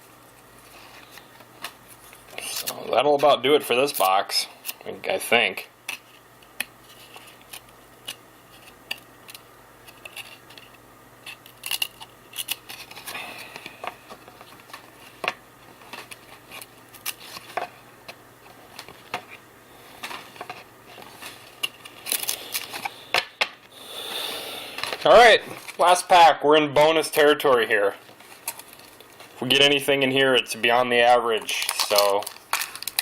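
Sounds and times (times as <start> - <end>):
wrapper crinkling: 19.9 - 23.0, 28.0 - 29.8, 31.3 - 33.0.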